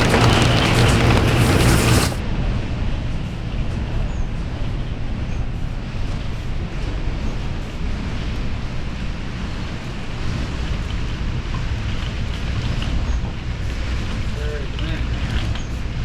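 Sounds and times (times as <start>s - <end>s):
strong wind against trailer: 0.0s - 2.2s.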